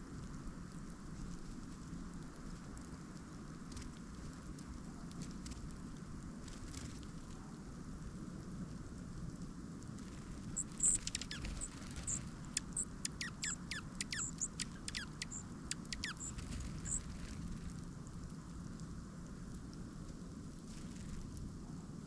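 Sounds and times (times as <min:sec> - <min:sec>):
low background rush: 0:00.0 - 0:22.0
small birds chipping: 0:10.0 - 0:17.6.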